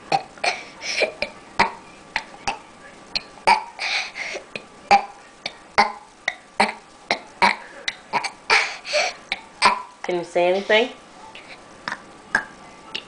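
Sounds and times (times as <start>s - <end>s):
girl burping: 0.1s - 1.8s, 3.5s - 3.8s, 5.8s - 8.7s.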